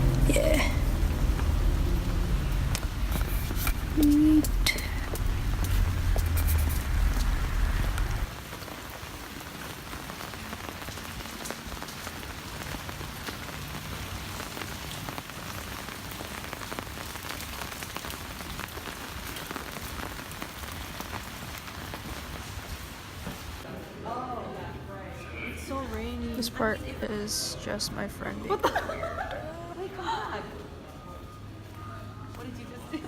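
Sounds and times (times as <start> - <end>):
low rumble: 0.0 - 8.3
rain falling into puddles: 0.0 - 23.7
drops ticking: 2.5 - 8.1.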